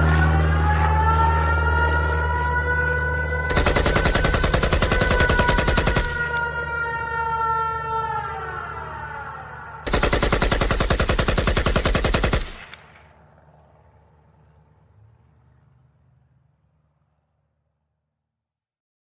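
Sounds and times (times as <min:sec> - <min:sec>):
siren winding down: 0:00.0 - 0:09.9
rapid machine-gun fire: 0:03.5 - 0:06.3, 0:09.8 - 0:13.1.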